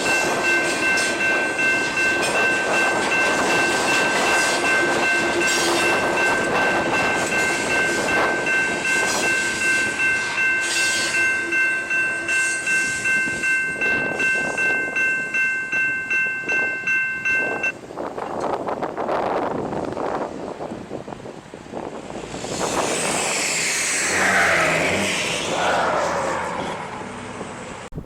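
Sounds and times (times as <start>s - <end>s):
wind noise: 0.0s - 11.1s, 12.8s - 25.5s
crossing warning bell ringing: 0.0s - 18.0s
freight train railcars rolling: 0.0s - 28.0s.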